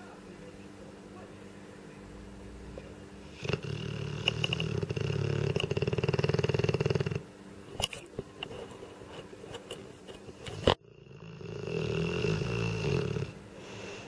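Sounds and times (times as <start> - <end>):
dog snoring: 2.6 - 7.3, 10.4 - 14.0.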